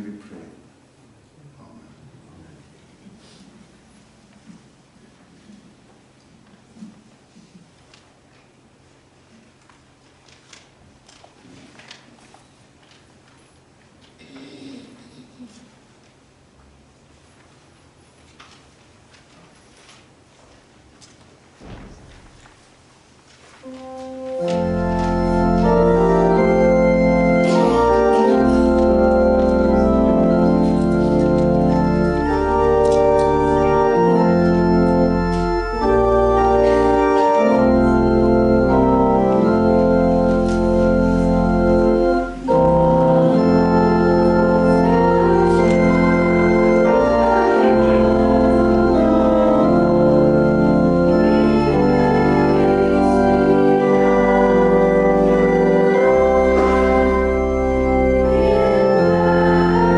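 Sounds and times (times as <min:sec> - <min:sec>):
organ playing sustained chords: 0:23.6 - 0:59.9.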